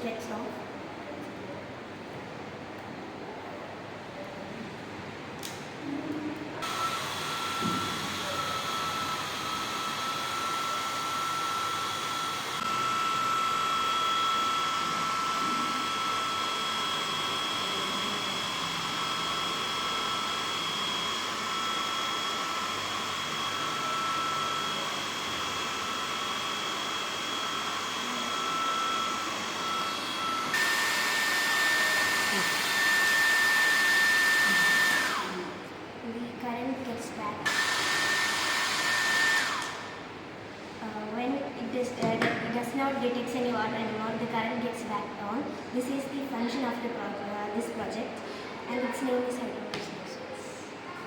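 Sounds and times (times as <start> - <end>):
small electric motor whining: 6.6 - 35.6, 37.4 - 40.0.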